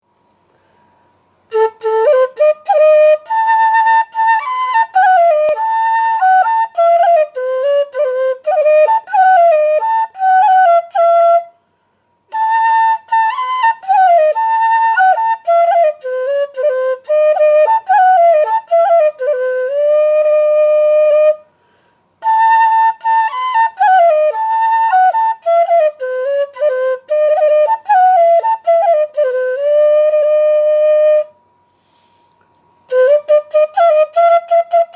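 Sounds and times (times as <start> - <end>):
solo flute melody: 1.4 - 32.1, 32.7 - 34.9.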